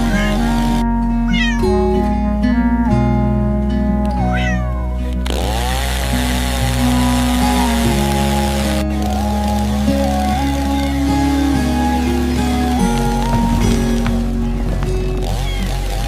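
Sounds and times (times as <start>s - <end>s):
cat meowing: 0.0s - 1.8s, 4.1s - 5.1s, 15.4s - 15.7s
background music with held notes: 0.0s - 16.0s.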